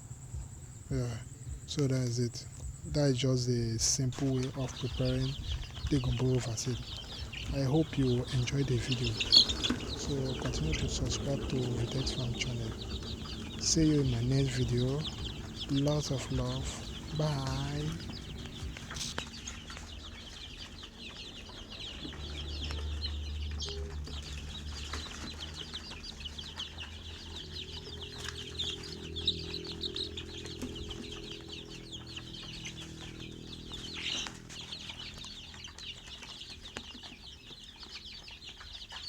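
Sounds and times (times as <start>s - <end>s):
low steady hum: 0.0s - 19.2s
chicks peeping: 0.0s - 39.0s.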